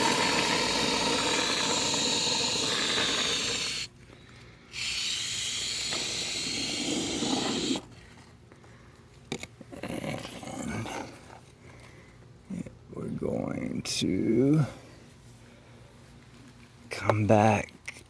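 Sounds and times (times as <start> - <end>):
spray can hissing: 0.0 - 3.9, 4.8 - 7.8.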